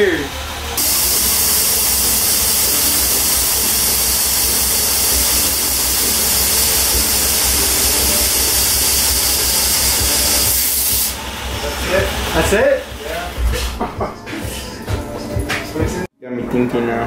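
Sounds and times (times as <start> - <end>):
air suspension hissing: 0.0 - 14.9.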